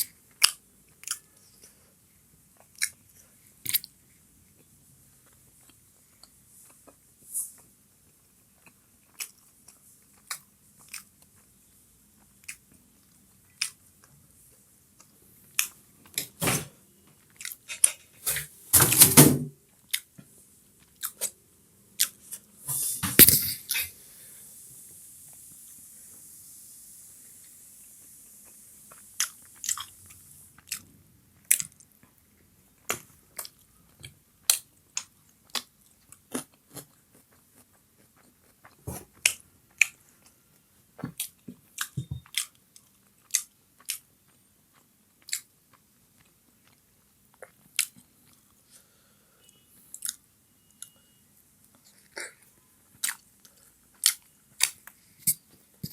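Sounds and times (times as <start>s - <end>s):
faint steady hiss: 0.0s - 55.9s
chewing and biting food: 8.0s - 11.5s, 32.8s - 40.3s, 41.1s - 48.6s, 51.7s - 55.4s.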